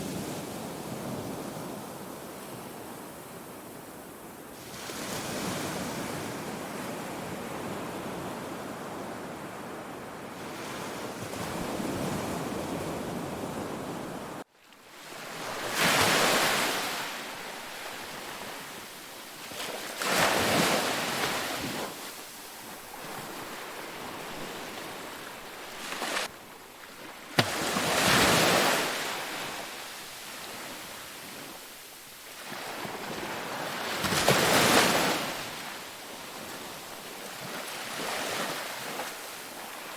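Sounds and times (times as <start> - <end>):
sea waves breaking: 19.5 - 31.5.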